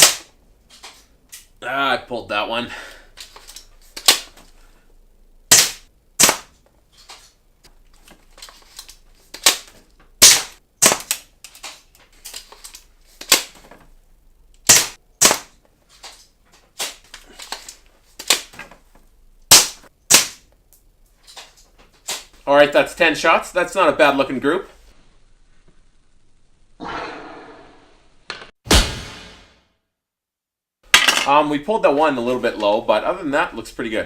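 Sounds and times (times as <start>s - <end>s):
airsoft shotgun shots cracking: 28.7s - 29.6s.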